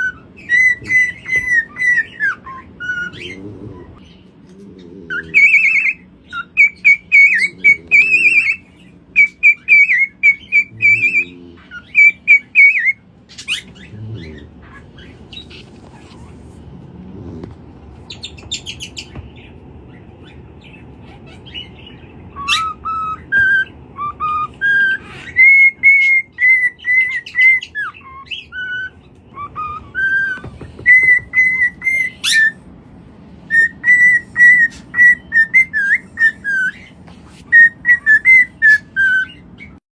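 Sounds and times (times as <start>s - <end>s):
parrot whistling: 0.0s - 3.4s, 5.1s - 13.7s, 21.3s - 32.6s, 33.5s - 39.8s
steady low hum: 0.0s - 39.8s.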